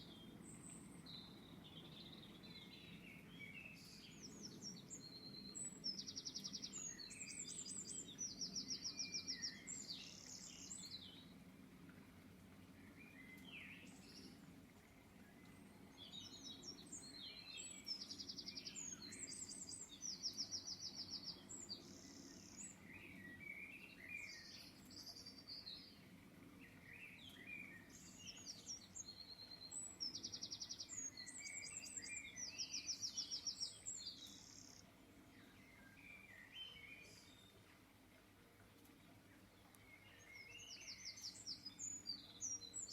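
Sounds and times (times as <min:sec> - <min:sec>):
songbird chirping and trilling: 0:00.0 - 0:12.0, 0:12.6 - 0:42.9.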